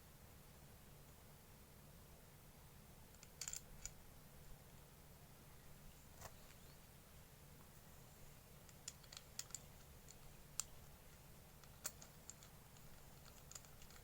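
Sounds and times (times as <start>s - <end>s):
faint light clicks and ticks: 8.6s - 14.0s.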